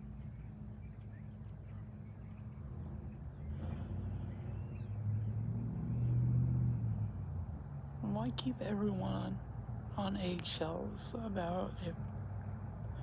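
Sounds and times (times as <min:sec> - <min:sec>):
faint bird chirps: 0:00.0 - 0:06.3
vehicle engine drone: 0:00.0 - 0:13.0.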